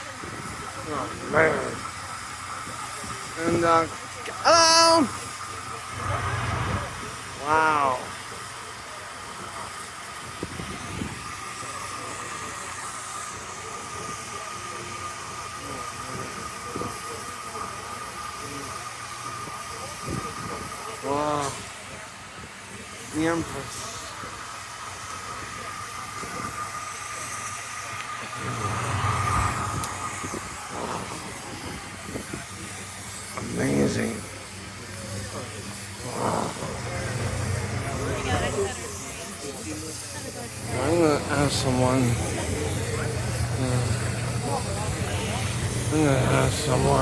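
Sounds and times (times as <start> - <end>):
steam locomotive hissing: 0.0 - 47.0
low rumble: 5.8 - 7.5, 28.2 - 32.6
steady tone: 5.8 - 7.6, 28.1 - 33.1
thin steady tone: 10.9 - 47.0.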